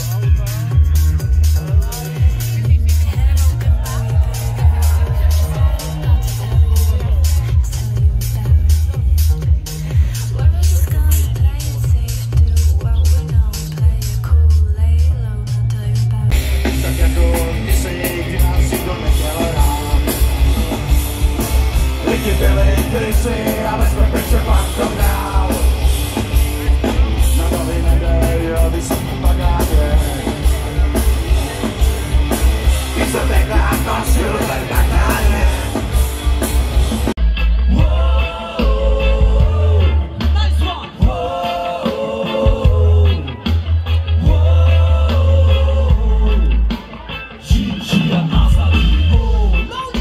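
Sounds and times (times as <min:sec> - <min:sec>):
punk rock band playing: 0:00.0 - 0:50.0
shouted singing: 0:03.6 - 0:07.8, 0:37.7 - 0:47.0.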